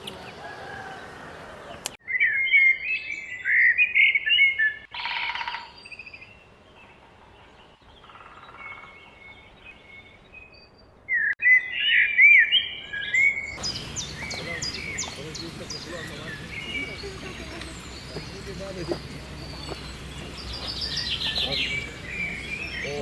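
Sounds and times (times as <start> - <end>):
songbirds twittering: 0.0 - 23.0.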